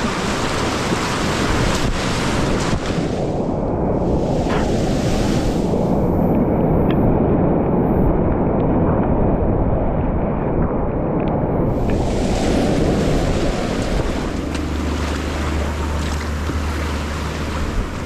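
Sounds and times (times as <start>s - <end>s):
whitewater rushing: 0.0s - 3.4s, 4.0s - 6.2s, 11.7s - 18.0s.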